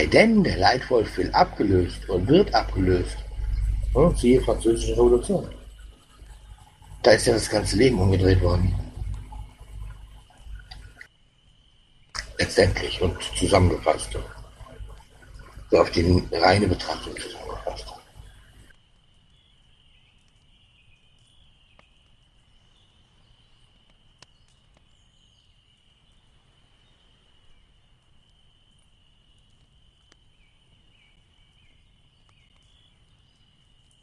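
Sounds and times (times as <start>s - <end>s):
faint clicks: 0.0s - 11.1s, 12.1s - 22.6s, 23.6s - 26.4s, 27.4s - 34.0s
faint high-pitched whine: 0.0s - 34.0s.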